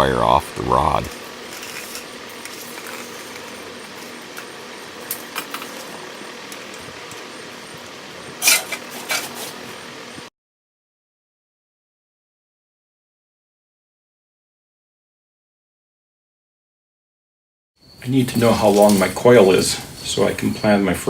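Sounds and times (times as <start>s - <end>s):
steady fan hum: 0.0s - 10.3s, 18.0s - 21.0s
coiled wire clinking: 1.1s - 7.2s.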